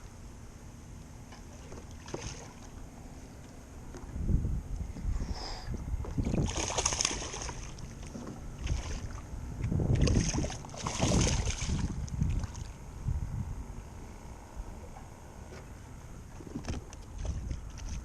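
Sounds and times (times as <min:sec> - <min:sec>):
fish splashing in water: 0:06.3 - 0:09.3, 0:09.9 - 0:12.8.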